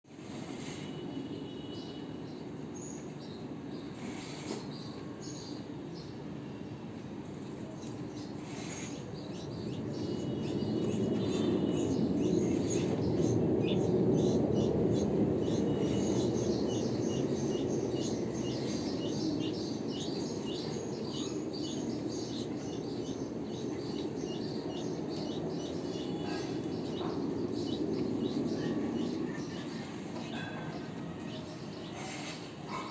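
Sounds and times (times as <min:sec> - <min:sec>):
birds chirping: 0:07.4 - 0:32.9.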